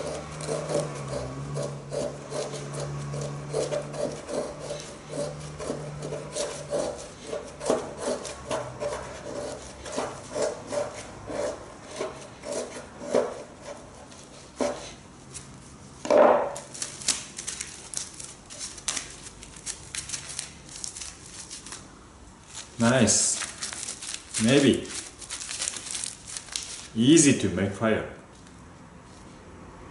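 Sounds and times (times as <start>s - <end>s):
knife scraping wood: 0.0s - 15.5s.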